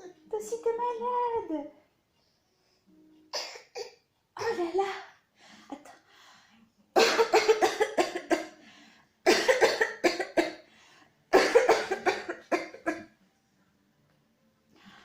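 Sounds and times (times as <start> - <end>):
woman coughing: 3.3 - 4.8, 7.0 - 8.6, 9.3 - 10.6, 11.3 - 13.1.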